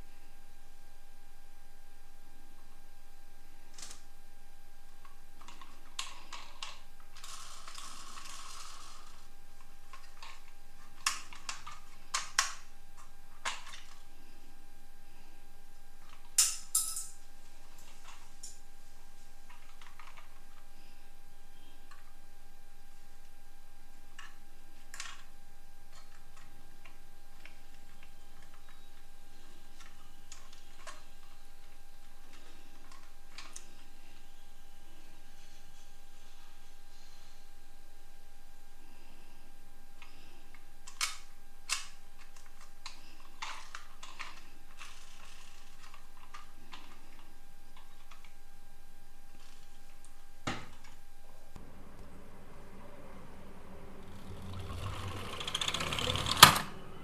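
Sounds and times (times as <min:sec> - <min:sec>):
faint steady hum: 0:00.0 - 0:57.0
faint steady whine: 0:00.0 - 0:57.0
toy cars clicking and clacking: 0:05.4 - 0:09.2, 0:40.9 - 0:47.0, 0:54.0 - 0:56.7
scraping rattle: 0:53.2 - 0:56.8.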